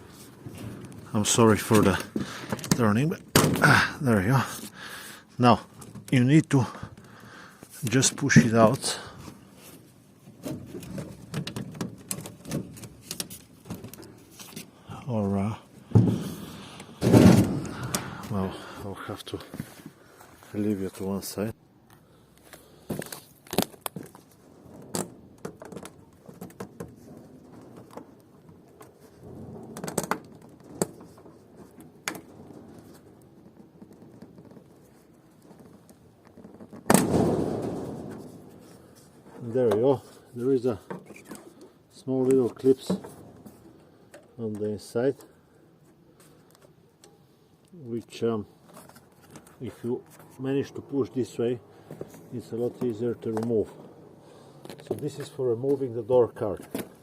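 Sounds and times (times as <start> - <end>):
loud crack of panel: 22.9 - 26.9, 29.2 - 33.0, 35.8 - 38.5.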